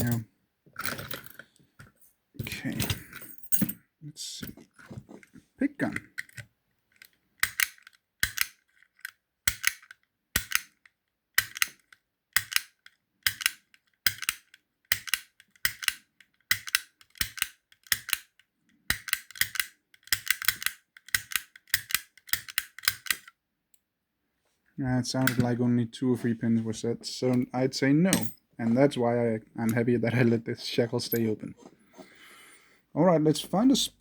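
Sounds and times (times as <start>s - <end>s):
pick gun snapping against lock: 7.0s - 10.8s, 11.4s - 18.3s, 18.9s - 23.3s.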